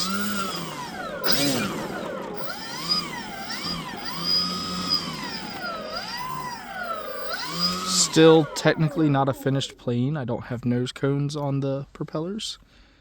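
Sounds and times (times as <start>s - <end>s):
electric motors and propellers whining: 0.0s - 9.8s.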